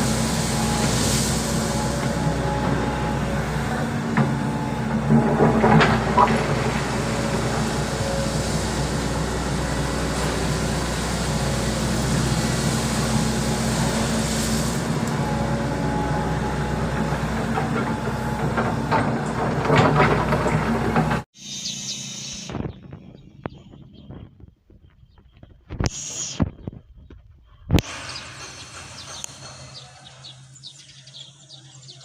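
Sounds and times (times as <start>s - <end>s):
excavator diesel engine running: 0.0s - 23.5s, 27.8s - 31.9s
clattering: 4.2s - 7.1s, 17.5s - 21.2s.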